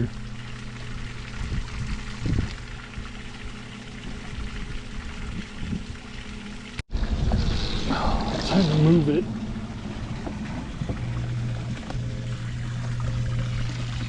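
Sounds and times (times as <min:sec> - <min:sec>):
water pouring and trickling: 0:00.0 - 0:14.0
water pump humming: 0:00.0 - 0:14.0.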